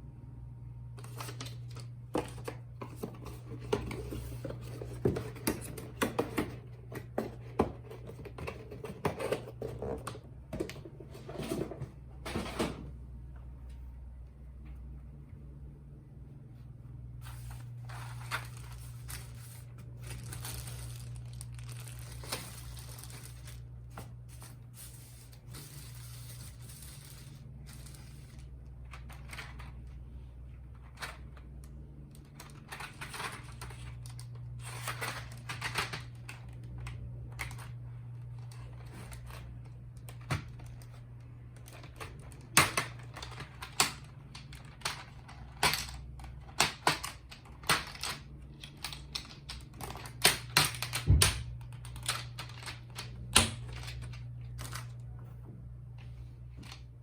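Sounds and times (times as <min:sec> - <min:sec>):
steady low hum: 0:00.0 - 0:57.0
packaging crinkling and rustling: 0:17.2 - 0:30.0, 0:32.1 - 0:55.2.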